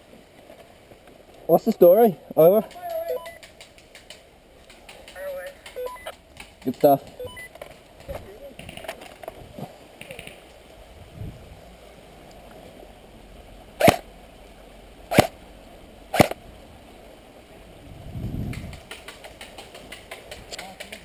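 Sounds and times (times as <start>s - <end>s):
airsoft rifle shots: 13.8s - 14.0s, 15.1s - 15.4s, 16.1s - 16.4s.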